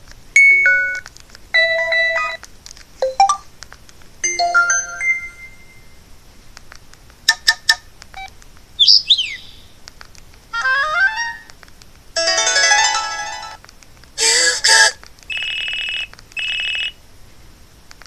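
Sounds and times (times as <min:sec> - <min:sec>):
phone ringtones and alert tones: 0:00.4 - 0:01.0, 0:03.0 - 0:03.4, 0:04.2 - 0:05.9, 0:12.2 - 0:13.6
fast beeps: 0:15.3 - 0:17.0.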